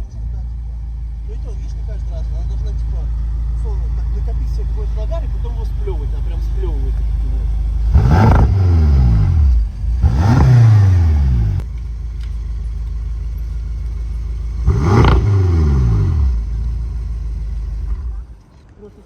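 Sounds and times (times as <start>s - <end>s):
car engine revving: 0.0s - 18.7s
engine idling: 0.0s - 19.0s.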